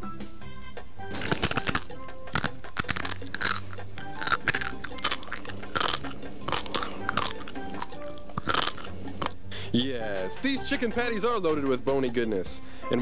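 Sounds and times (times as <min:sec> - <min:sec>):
background music: 0:00.0 - 0:13.0
loud chewing crunches: 0:01.1 - 0:09.4.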